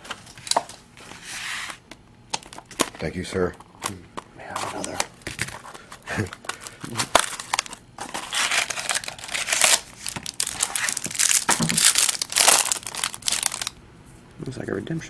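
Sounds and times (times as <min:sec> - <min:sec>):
wrapper crinkling and tearing: 0:06.2 - 0:13.8.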